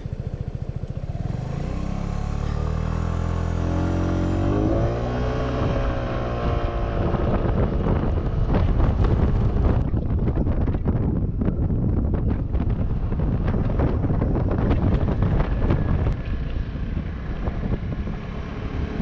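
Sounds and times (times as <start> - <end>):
scooter engine pulling away: 0.0 - 9.5
wind noise on microphone: 0.0 - 19.0.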